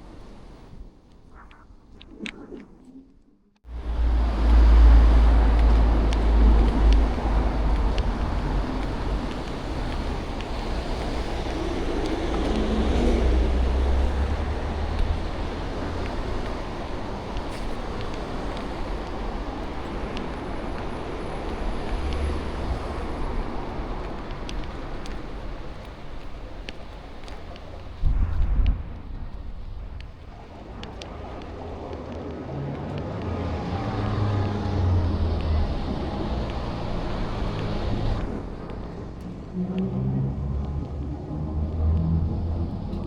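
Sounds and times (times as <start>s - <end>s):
wind rumble on microphone: 0.0s - 43.0s
road traffic passing: 3.7s - 28.0s, 30.6s - 43.0s.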